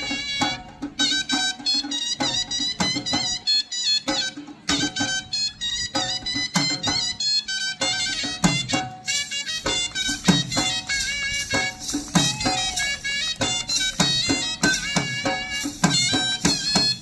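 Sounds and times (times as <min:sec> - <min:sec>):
wind instrument melody: 0:00.0 - 0:17.0
drum strokes with deep bass: 0:08.4 - 0:17.0.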